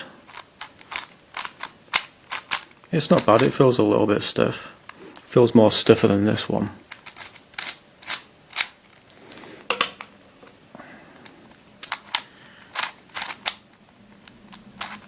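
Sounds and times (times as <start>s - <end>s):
plastic puzzle pieces clicking: 0.3s - 3.6s, 6.9s - 8.8s, 11.7s - 15.0s.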